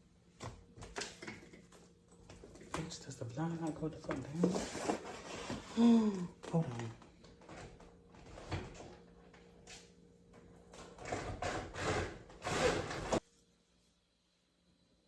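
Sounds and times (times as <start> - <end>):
window blind scraping and rustling: 4.4 - 5.7, 11.0 - 13.2.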